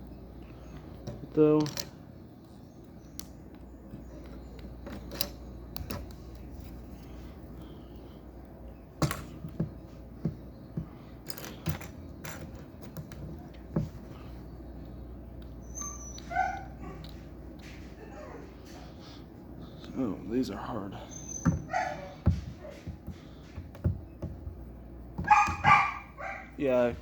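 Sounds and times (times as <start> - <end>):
dog barking: 16.3 - 17.1, 21.7 - 22.8, 25.2 - 26.6.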